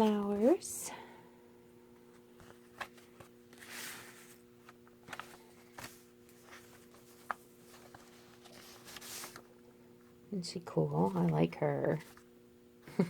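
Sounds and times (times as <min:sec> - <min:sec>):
faint steady hum: 0:00.0 - 0:13.0
paper rustling: 0:02.4 - 0:09.5.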